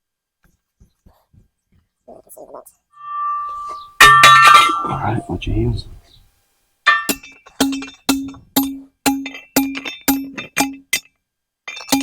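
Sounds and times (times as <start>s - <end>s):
post driver clanging on steel post: 3.0s - 5.2s, 6.9s - 11.1s, 11.7s - 12.0s.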